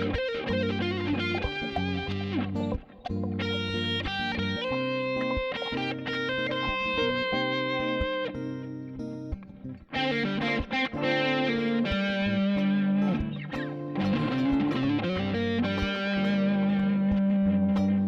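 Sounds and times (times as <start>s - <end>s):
background music: 0.0s - 18.0s.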